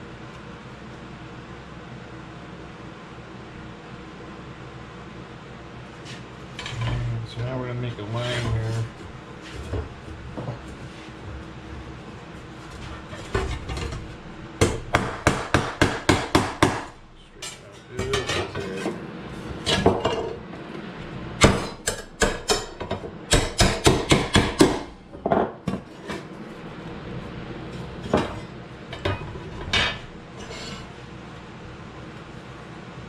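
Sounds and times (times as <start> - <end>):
hammer striking sheet steel: 14.6 - 17.0.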